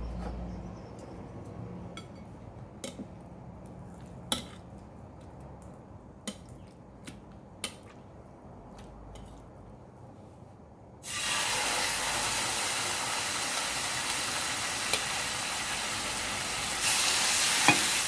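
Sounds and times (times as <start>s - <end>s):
dishes clinking: 17.6s - 17.9s.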